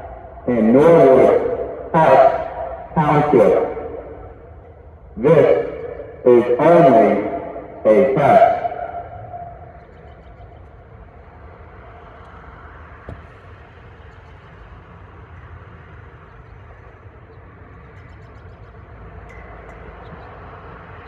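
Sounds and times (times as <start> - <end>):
siren voice announcements: 0.0 - 9.8
outdoor background rumble and hiss: 0.0 - 21.0.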